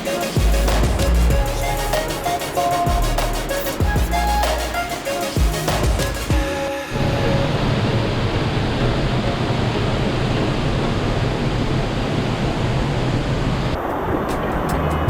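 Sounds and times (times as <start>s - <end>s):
waterfall rushing: 0.0s - 9.3s.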